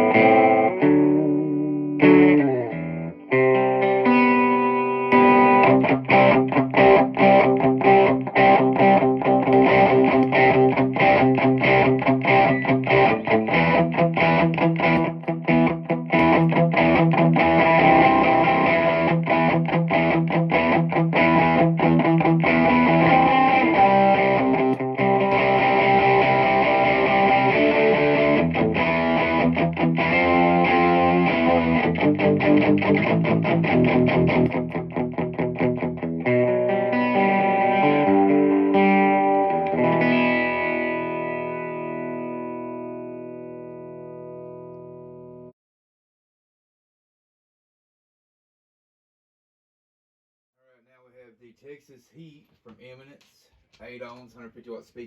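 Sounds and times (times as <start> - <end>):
distorted electric guitar riffs: 0.0 - 45.5.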